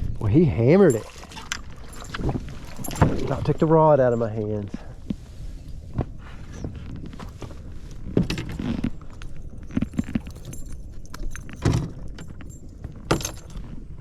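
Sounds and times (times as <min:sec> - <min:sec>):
metal lure blades and hooks rattling: 0:00.8 - 0:04.9, 0:07.2 - 0:14.0.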